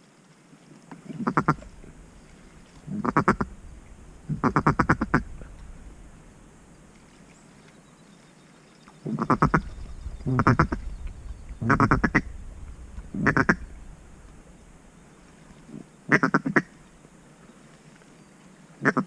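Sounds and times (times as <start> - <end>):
duck quacking: 1.2 - 1.7, 2.9 - 3.5, 4.3 - 5.3, 13.2 - 13.6, 16.1 - 16.7.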